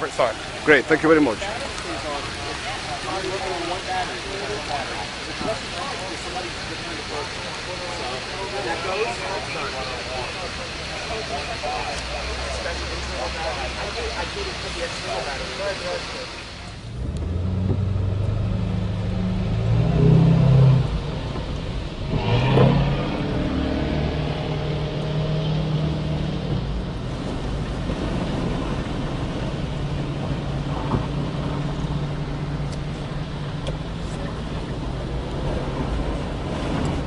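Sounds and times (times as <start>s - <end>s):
motor engine revving: 16.8s - 34.0s.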